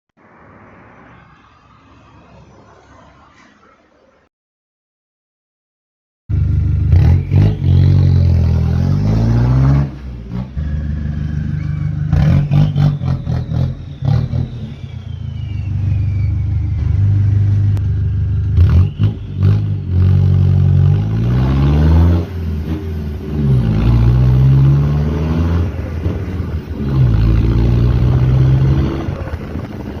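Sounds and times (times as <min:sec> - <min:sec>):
diesel engine revving: 0:06.3 - 0:30.0.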